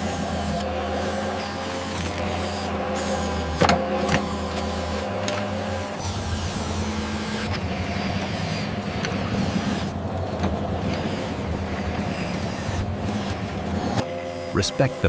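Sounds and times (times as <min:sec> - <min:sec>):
toy motor hum: 0:00.0 - 0:06.4.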